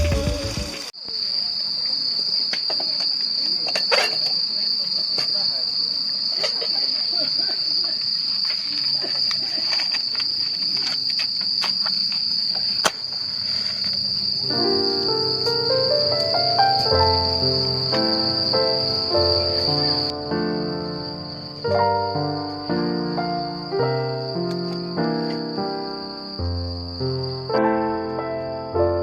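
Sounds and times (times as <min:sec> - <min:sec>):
insects trilling: 0:00.0 - 0:29.0.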